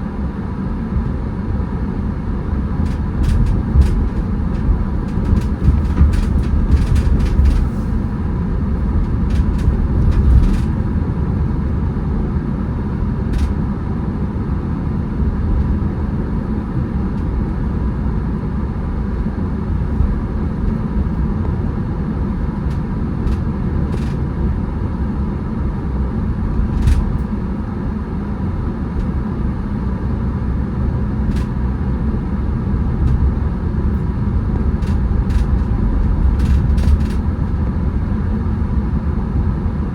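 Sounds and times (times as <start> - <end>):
road and engine rumble: 0.0 - 39.9.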